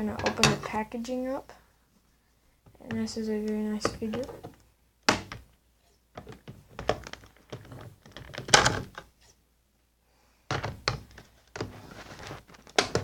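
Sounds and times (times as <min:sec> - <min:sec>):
knocks and thunks of packaging: 0:10.5 - 0:13.0
packaging rustling and scraping: 0:11.1 - 0:13.0.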